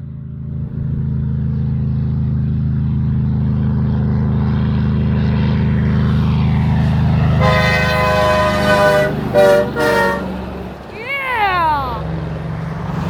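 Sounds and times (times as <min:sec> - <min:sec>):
truck horn blast: 0:07.4 - 0:10.4.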